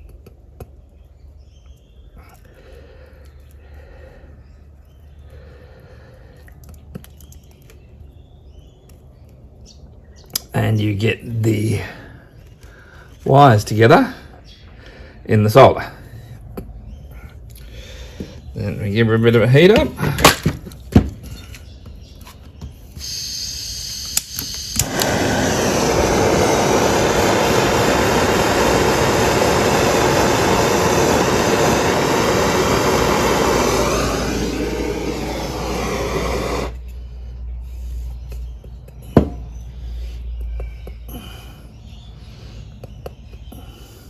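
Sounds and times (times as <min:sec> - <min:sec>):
heat gun blowing: 0:22.9 - 0:36.8.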